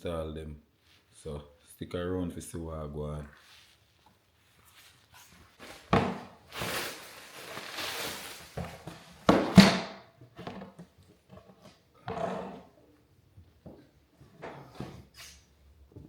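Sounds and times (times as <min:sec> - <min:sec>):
wooden boards thumping: 0:09.3 - 0:10.0.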